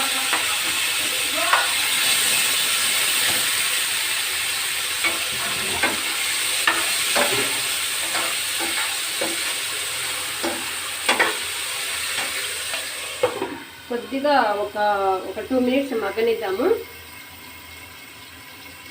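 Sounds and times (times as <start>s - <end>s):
vegetables sizzling in hot oil: 0.0s - 18.9s
spoon knocking against pan: 1.5s - 1.8s, 10.4s - 11.4s.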